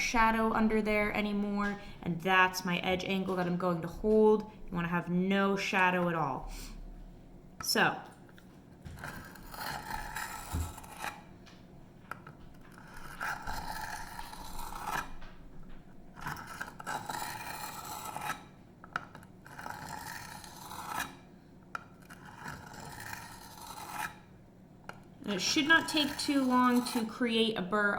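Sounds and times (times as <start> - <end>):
knife scraping on sharpening stone: 9.0 - 11.2, 12.8 - 15.0, 16.2 - 18.4, 19.5 - 21.2, 22.0 - 24.2, 25.8 - 27.1.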